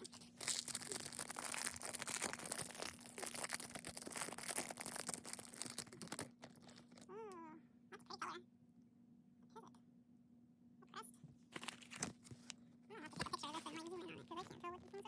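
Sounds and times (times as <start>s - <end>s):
plastic wrapper crinkling and tearing: 0.0s - 7.1s.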